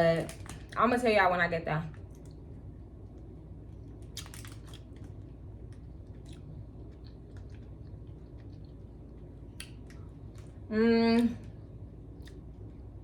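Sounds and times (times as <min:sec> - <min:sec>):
person chewing candy: 0:04.0 - 0:10.5.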